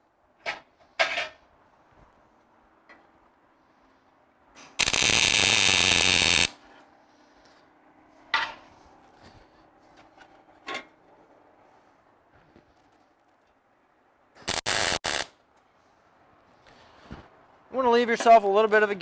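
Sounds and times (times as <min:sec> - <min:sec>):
welder crackling buzz: 0:04.8 - 0:06.6, 0:14.4 - 0:15.3.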